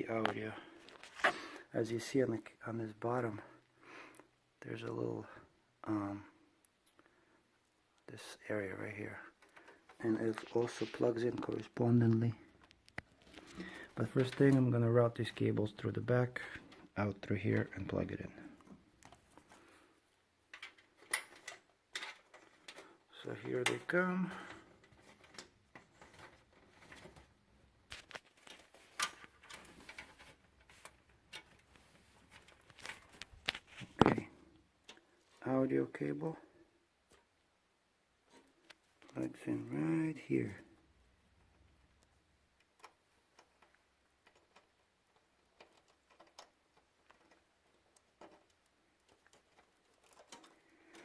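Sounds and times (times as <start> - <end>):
cables and connectors clicking: 9.3 - 19.6, 20.5 - 35.1, 41.4 - 51.0.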